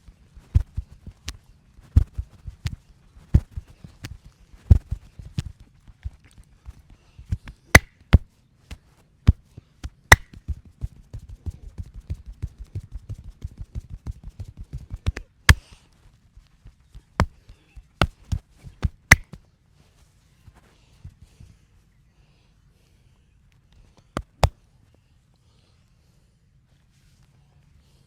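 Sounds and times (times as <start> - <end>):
hands chopping taps on body: 0.4 - 1.4, 2.0 - 2.8, 3.4 - 13.2, 14.1 - 15.8, 16.6 - 19.4, 24.1 - 24.6
hands slapping: 0.4 - 15.8, 16.6 - 19.4, 24.0 - 24.6.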